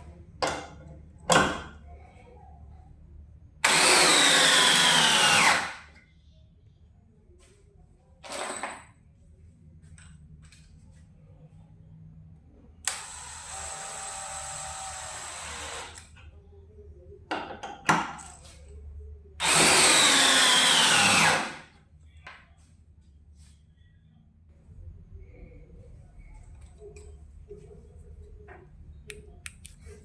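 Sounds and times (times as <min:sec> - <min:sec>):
hammer drill running: 0:03.6 - 0:05.8, 0:12.9 - 0:16.1, 0:19.4 - 0:21.6.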